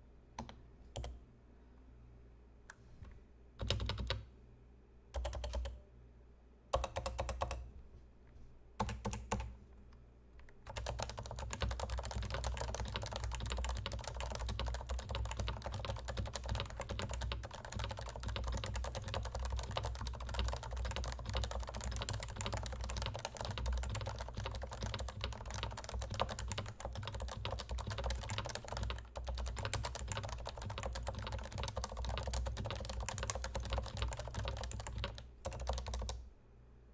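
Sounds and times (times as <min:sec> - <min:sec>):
keyboard typing: 0:03.6 - 0:04.2, 0:05.2 - 0:05.8, 0:06.7 - 0:07.6, 0:08.8 - 0:09.5, 0:10.6 - 0:36.2.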